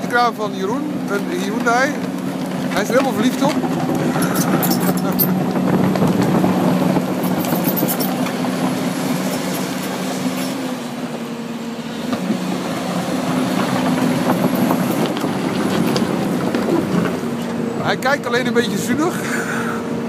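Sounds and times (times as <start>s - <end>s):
diesel engine humming: 0.0s - 20.0s.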